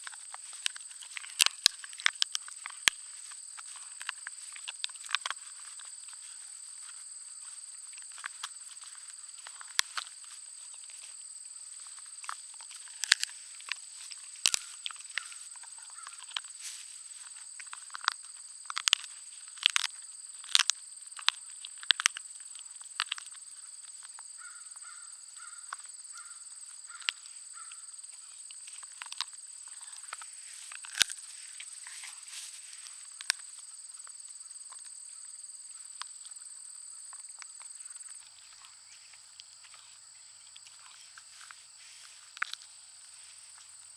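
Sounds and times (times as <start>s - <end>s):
dog gnawing on a bone: 0.0s - 6.4s, 12.2s - 22.2s, 28.6s - 33.4s.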